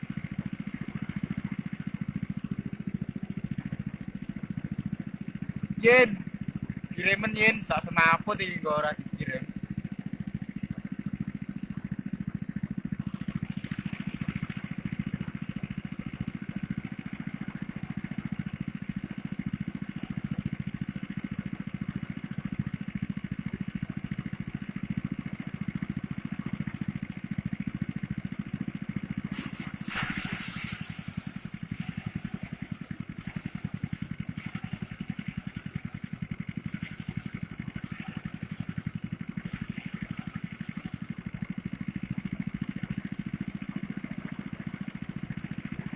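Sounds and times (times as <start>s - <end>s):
small engine running: 0.0s - 45.9s
brief hissing rush: 29.3s - 31.4s.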